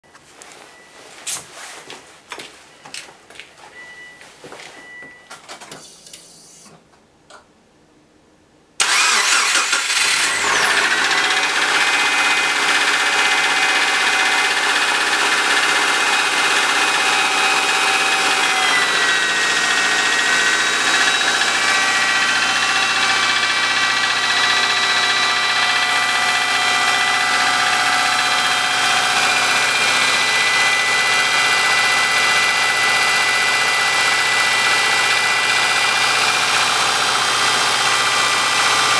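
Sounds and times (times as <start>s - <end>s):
engine cranking and starting: 8.8s - 31.6s.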